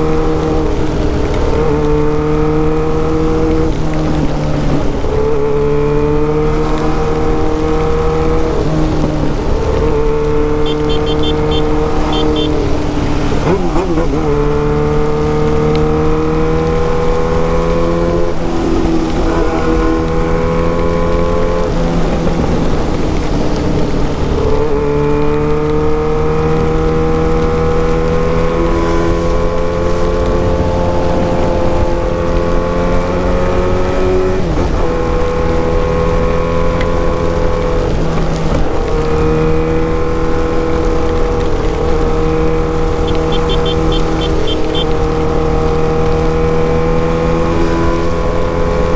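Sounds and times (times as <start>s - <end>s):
motorcycle engine revving: 0.0s - 48.9s
rain and wind hiss: 0.0s - 48.9s.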